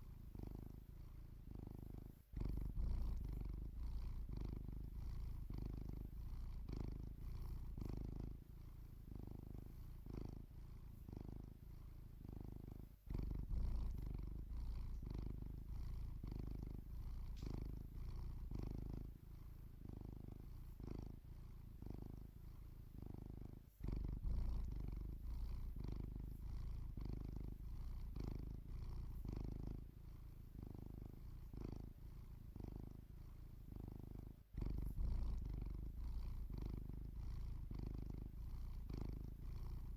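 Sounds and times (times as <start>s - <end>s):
cat purring: 0.0s - 39.9s.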